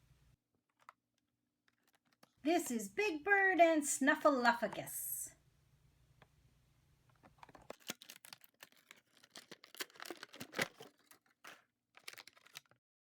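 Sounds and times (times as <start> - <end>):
packaging rustling and crinkling: 0.6 - 2.4, 7.1 - 12.8.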